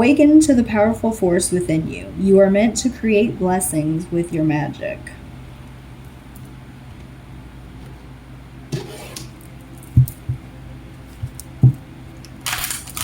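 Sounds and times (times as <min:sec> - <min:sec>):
cards sliding on a table: 0:08.7 - 0:09.4.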